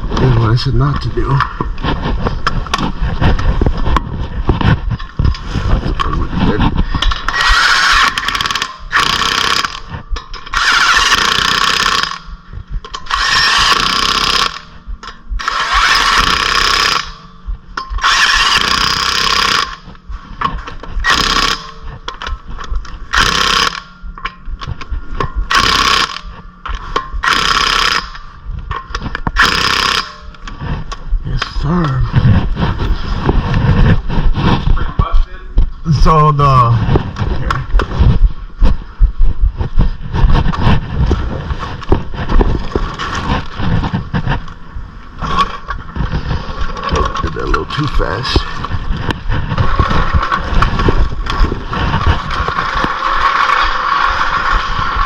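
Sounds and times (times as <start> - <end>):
impact wrench bursts: 7.2 - 12.3, 12.9 - 14.8, 15.4 - 17.3, 18.0 - 19.9, 21.0 - 21.9, 23.1 - 24.0, 25.5 - 26.3, 27.2 - 28.2, 29.4 - 30.4.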